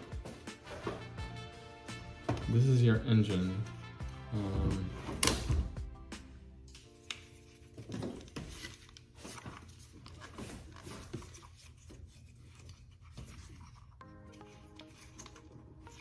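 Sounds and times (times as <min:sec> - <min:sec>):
background music notes: 0:00.0 - 0:08.7
rubbing and scraping handling noise: 0:00.0 - 0:16.0.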